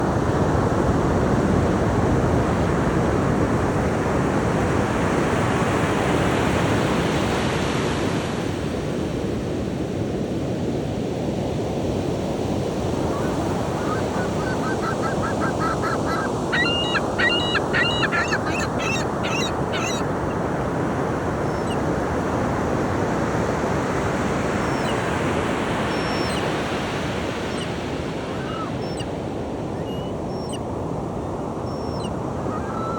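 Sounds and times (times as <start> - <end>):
surf washing on beach: 0.0 - 32.9
seagull calling: 13.0 - 20.5, 21.4 - 21.8, 27.5 - 29.1, 29.7 - 30.6, 31.3 - 32.9.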